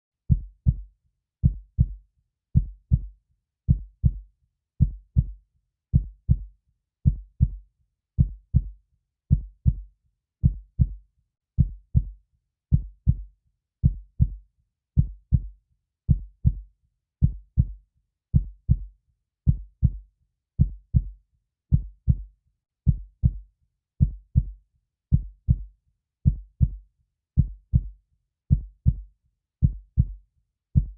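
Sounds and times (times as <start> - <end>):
heartbeat thumping: 0.3 - 0.8, 1.4 - 2.0, 2.6 - 3.1, 3.7 - 4.2, 6.0 - 6.4, 8.2 - 8.7, 9.3 - 9.8, 10.4 - 11.0, 11.6 - 12.1, 12.7 - 13.2, 13.8 - 14.4, 17.2 - 17.8, 18.4 - 18.8, 19.5 - 20.0, 20.6 - 21.1, 21.7 - 22.2, 22.9 - 23.4, 24.0 - 24.5, 25.1 - 26.8, 27.4 - 27.9, 28.5 - 29.0, 29.6 - 30.2.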